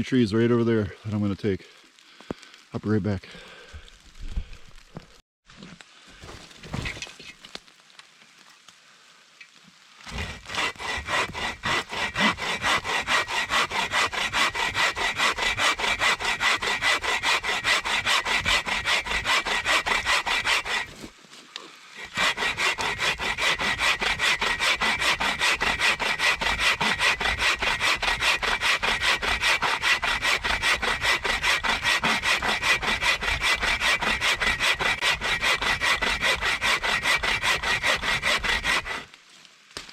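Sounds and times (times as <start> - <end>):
hand saw cutting tree trunk: 10.1 - 21.1, 22.0 - 39.1.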